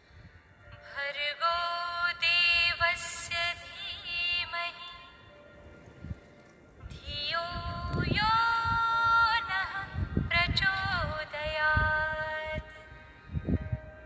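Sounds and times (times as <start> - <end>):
woman singing wordless notes: 0.8 - 5.3, 6.9 - 13.2
uneven low rumble: 5.7 - 14.0.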